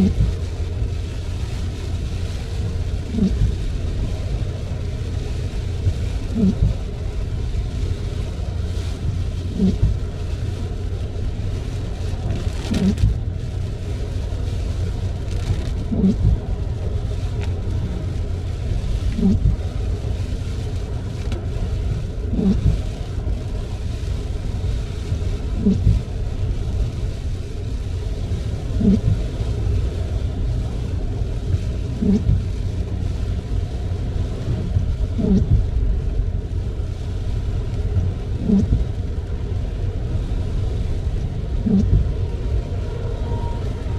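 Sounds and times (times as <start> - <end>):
rain on a car: 0.0 - 43.9
tyres on a wet road: 0.0 - 43.9
windshield wipers squeaking: 9.4 - 10.0, 12.4 - 13.2, 15.3 - 16.5, 19.0 - 19.7, 22.3 - 23.0, 25.5 - 26.1, 28.7 - 29.3, 31.5 - 32.5, 35.2 - 35.7, 41.6 - 42.2.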